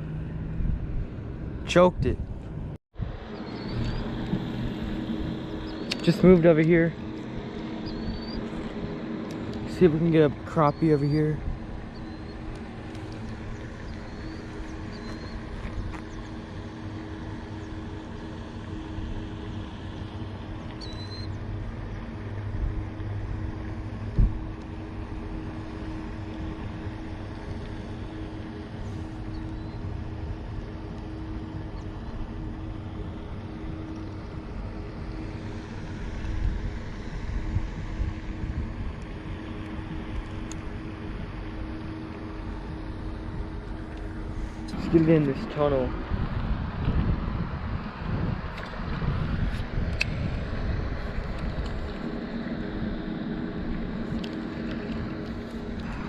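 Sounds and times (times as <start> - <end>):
motor humming: 0.0 - 56.0.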